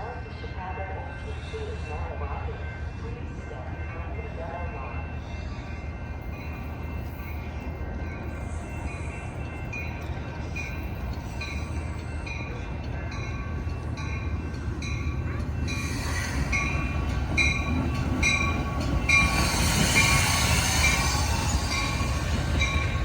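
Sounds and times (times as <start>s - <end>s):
train rumble: 0.0s - 23.0s
level-crossing bell ringing: 0.4s - 23.0s
wheels and brakes hissing squealing: 15.7s - 17.0s, 18.4s - 23.0s.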